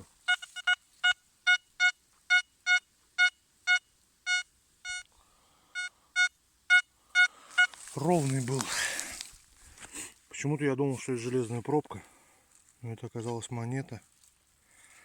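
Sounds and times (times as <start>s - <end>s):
metal detector short beeps: 0.3s - 5.1s, 5.8s - 7.8s.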